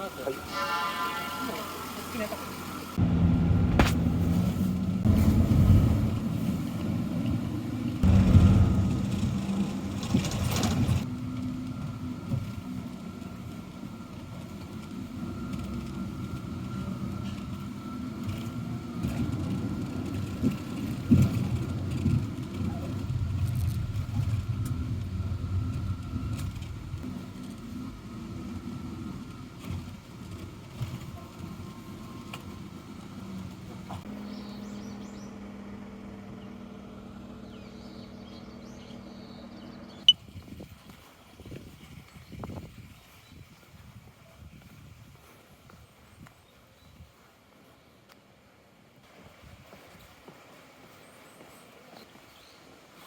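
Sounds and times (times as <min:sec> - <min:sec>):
vehicle engine rumble: 0:02.0 - 0:43.9
low mechanical hum: 0:02.6 - 0:40.6
small birds chirping: 0:34.1 - 0:35.4, 0:37.4 - 0:40.1.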